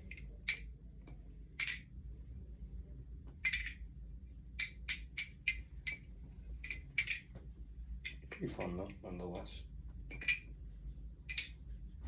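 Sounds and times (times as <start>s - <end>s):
balisong handles clacking: 0.0s - 1.9s, 3.3s - 3.9s, 4.6s - 10.6s, 11.3s - 11.6s.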